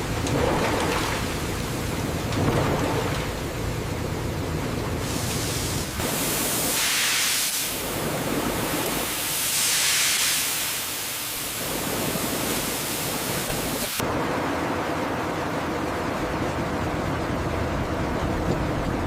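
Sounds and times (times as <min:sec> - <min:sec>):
rushing hiss: 0:05.0 - 0:14.0.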